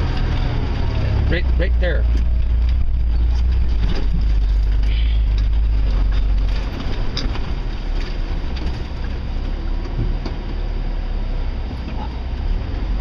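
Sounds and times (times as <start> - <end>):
truck engine low rumble: 0.0 - 13.0
body knocks and rattles: 2.0 - 10.7.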